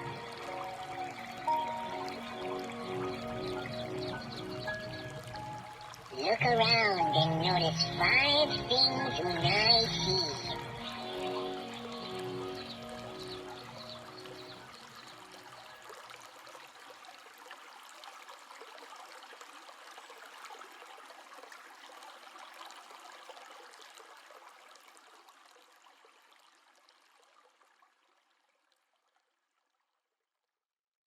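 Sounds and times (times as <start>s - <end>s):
waterfall rushing: 0.0s - 15.7s.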